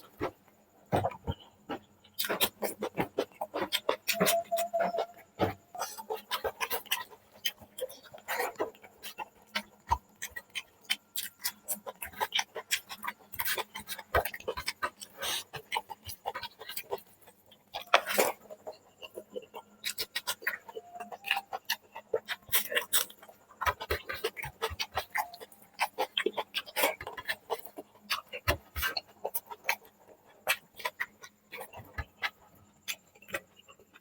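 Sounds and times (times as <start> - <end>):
chewing and smacking: 0.0 - 34.0.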